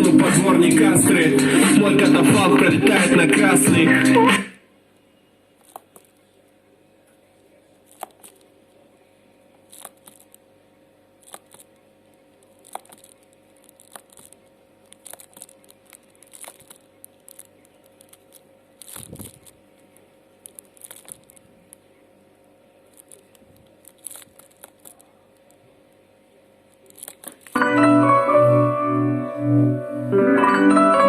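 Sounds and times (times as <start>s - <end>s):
faint steady hum: 0.0s - 31.0s
handling noise clicks and rustles: 12.4s - 21.9s, 22.9s - 25.7s, 26.7s - 27.6s.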